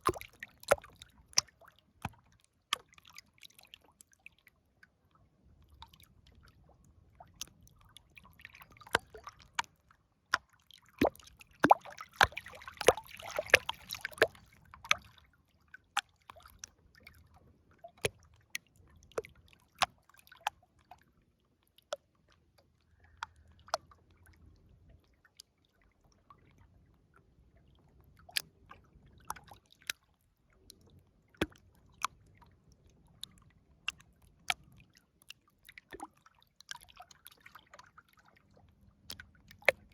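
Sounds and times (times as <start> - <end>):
water dripping and splashing: 0.0 - 4.4, 7.4 - 15.2, 31.4 - 32.5.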